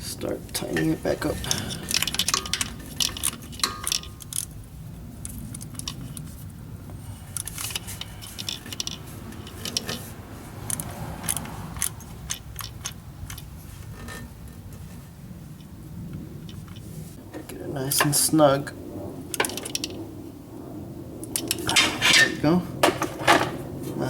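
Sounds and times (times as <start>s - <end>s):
ratchet wrench clicking: 10.6s - 13.5s.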